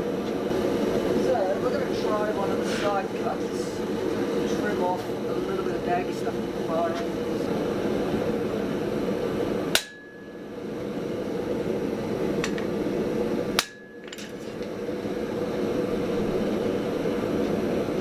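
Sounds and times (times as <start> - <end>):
steady rushing background noise: 0.0 - 18.0
hammer blows on steel ringing: 9.8 - 10.8, 13.6 - 14.6.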